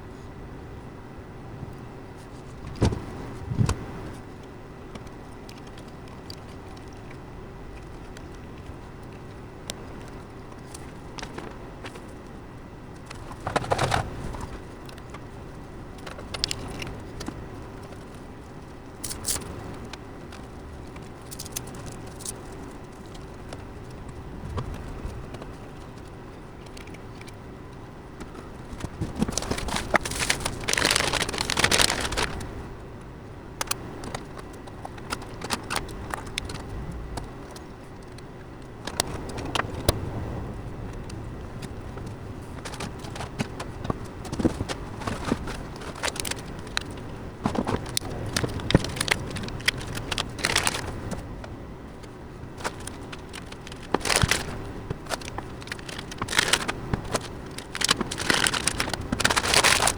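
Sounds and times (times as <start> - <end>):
clicks and rattles of computer parts: 13.0 - 15.3, 16.0 - 18.2, 19.0 - 32.5, 33.6 - 40.0, 40.9 - 59.9.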